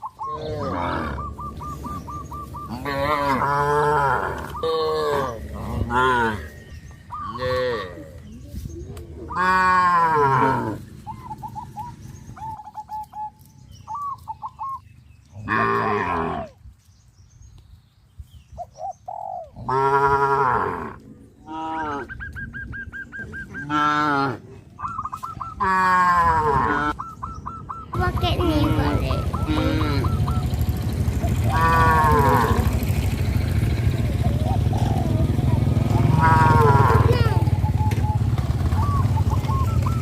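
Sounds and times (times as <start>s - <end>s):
birds chirping: 0.0s - 40.0s
cattle mooing: 0.3s - 1.4s, 2.7s - 6.6s, 7.3s - 8.2s, 9.4s - 10.8s, 15.4s - 16.5s, 19.6s - 22.1s, 23.6s - 24.4s, 25.6s - 27.0s, 28.5s - 30.2s, 31.3s - 32.9s, 35.8s - 37.3s.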